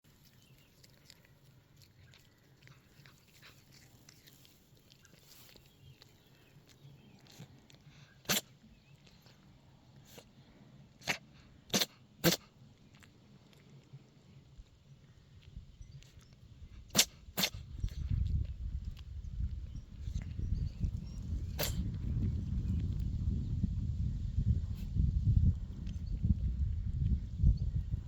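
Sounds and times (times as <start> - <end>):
cat sneezing: 8.2 - 8.5, 11.0 - 12.5, 16.9 - 17.6, 21.6 - 21.8.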